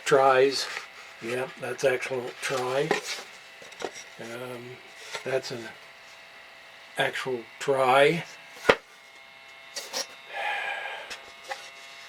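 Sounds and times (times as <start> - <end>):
wood rubbing scrape: 2.1 - 5.4.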